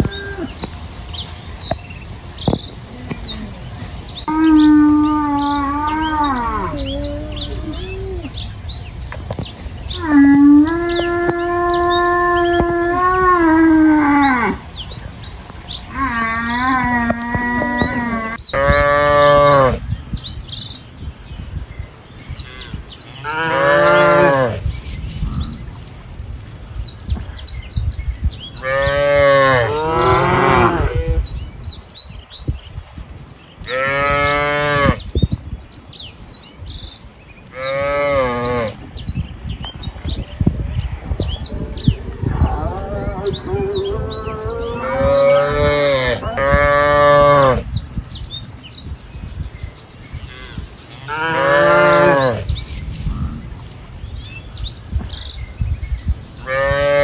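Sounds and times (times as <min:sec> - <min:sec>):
small birds chirping: 0:00.0 - 0:57.0
cattle mooing: 0:23.2 - 0:24.6, 0:41.5 - 0:47.6, 0:51.1 - 0:52.4.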